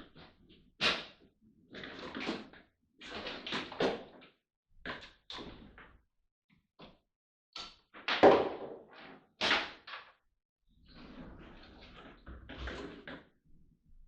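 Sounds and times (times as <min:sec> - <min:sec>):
objects knocking and thudding: 0:08.0 - 0:08.8.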